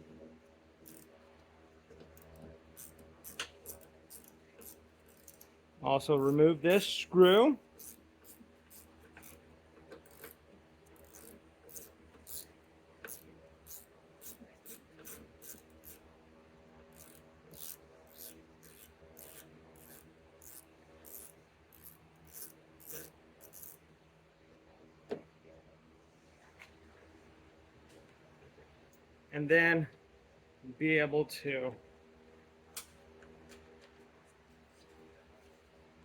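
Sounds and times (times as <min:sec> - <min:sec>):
ratchet clicking: 0:00.8 - 0:01.1, 0:02.2 - 0:05.5, 0:07.8 - 0:09.4, 0:10.0 - 0:16.0, 0:16.9 - 0:23.8.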